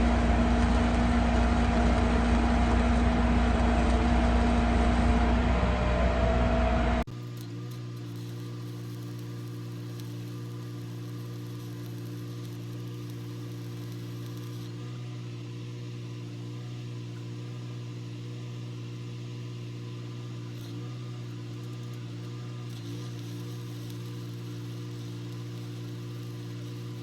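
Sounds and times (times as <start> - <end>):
welding machine humming: 7.0 - 27.0.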